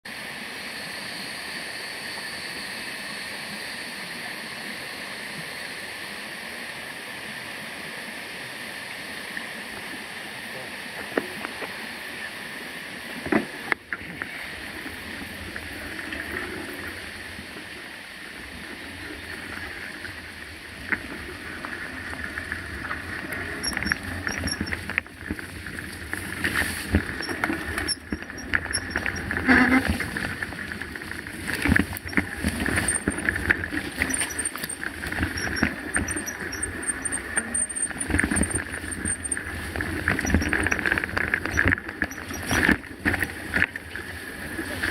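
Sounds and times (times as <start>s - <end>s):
rushing water: 5.6s - 44.9s
bike tyres rolling over rough trail: 13.2s - 44.9s
bike clicking and rattling: 22.1s - 44.1s.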